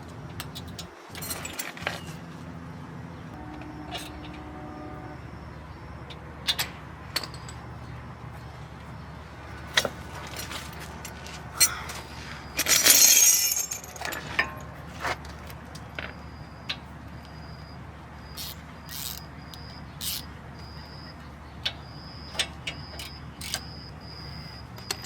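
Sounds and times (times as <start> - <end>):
steady low hum: 0.0 - 14.9
metallic clinks of brake pads: 6.1 - 8.9, 9.6 - 17.6, 18.3 - 23.9.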